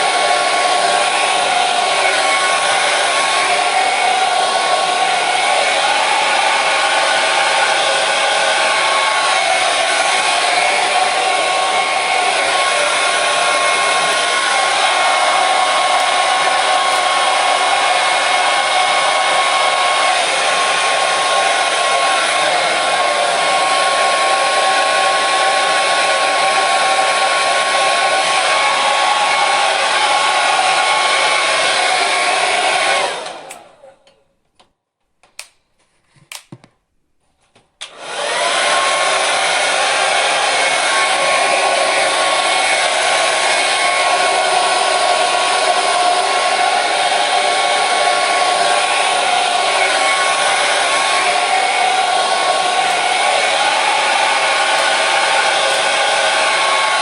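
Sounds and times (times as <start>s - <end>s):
hair dryer running: 0.0s - 33.9s, 37.8s - 57.0s
switch clicks: 35.2s - 36.8s.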